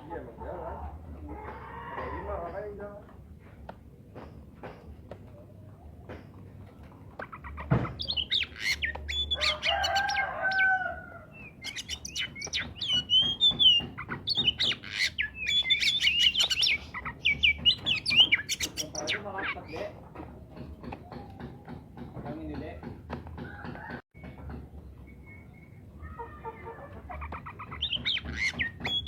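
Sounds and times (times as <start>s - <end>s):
bird singing whistled notes: 8.0s - 10.6s, 11.3s - 19.6s, 25.0s - 25.9s, 27.8s - 29.0s
knock: 19.8s - 24.8s.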